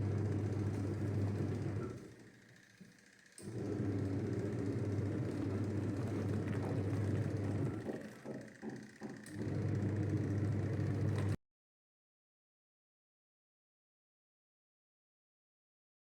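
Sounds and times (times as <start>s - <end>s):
washing machine motor hum: 0.0s - 11.4s.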